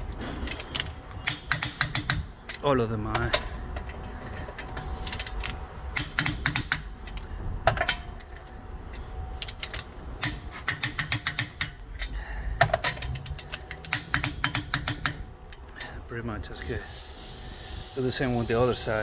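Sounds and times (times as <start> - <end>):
ratchet wrench clicking: 0.5 - 4.0, 4.6 - 8.3, 8.9 - 16.0.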